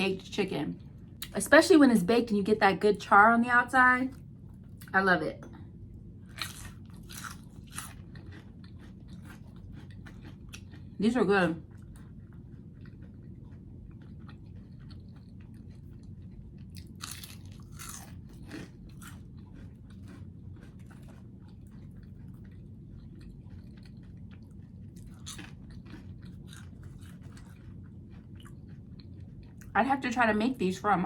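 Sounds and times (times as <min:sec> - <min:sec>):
person chewing crisp food: 0:06.2 - 0:11.0, 0:11.6 - 0:29.8.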